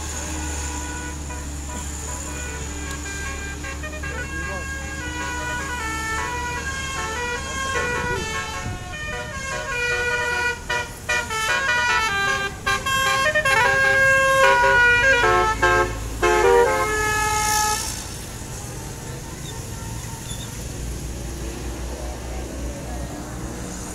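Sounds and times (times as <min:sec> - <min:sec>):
multi-tone bus horn melody: 0:00.0 - 0:18.2
bus engine running: 0:00.0 - 0:23.9.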